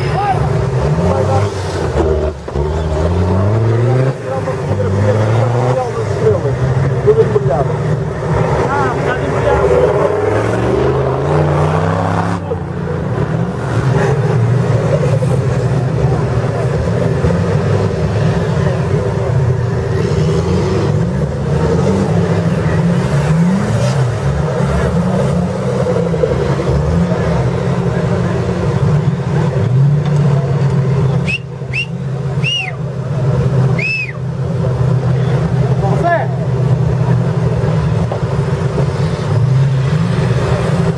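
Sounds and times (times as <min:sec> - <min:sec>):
off-road vehicle engine revving: 0:00.0 - 0:40.9.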